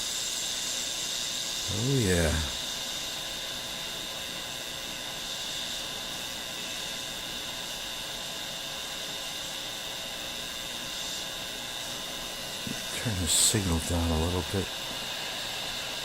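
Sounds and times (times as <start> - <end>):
radio hiss: 1.7 - 2.7, 12.6 - 14.7.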